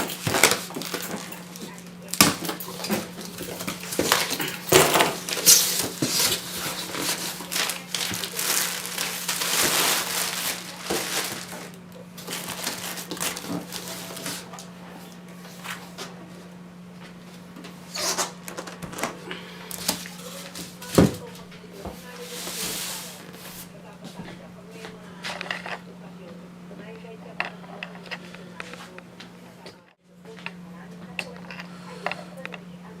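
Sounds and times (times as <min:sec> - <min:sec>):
packaging crinkling and rustling: 0:00.0 - 0:14.6.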